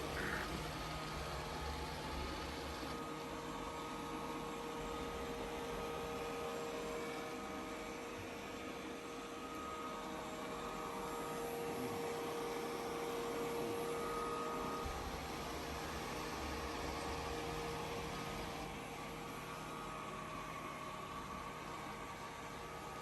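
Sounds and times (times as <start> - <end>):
robot vacuum running: 0.0 - 3.8.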